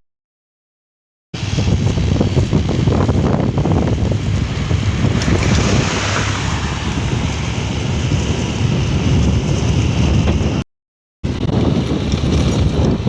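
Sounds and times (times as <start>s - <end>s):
vehicle road noise: 1.4s - 10.6s, 11.3s - 13.0s
wind rumbling on microphone: 1.4s - 10.6s, 11.2s - 13.0s.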